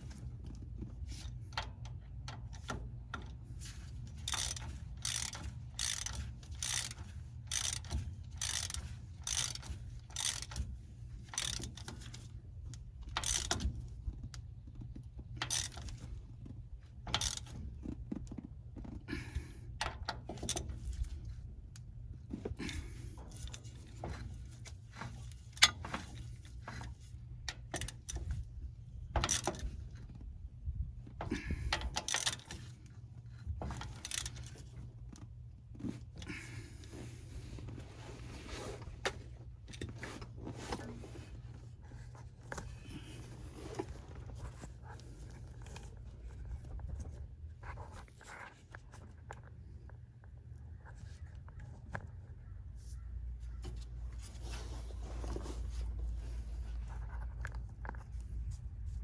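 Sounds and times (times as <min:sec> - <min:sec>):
ratchet wrench clicking: 0:04.1 - 0:10.7, 0:11.3 - 0:12.2, 0:13.1 - 0:13.7, 0:15.4 - 0:15.9, 0:17.1 - 0:17.5, 0:29.2 - 0:29.6, 0:31.7 - 0:32.6, 0:33.8 - 0:34.5.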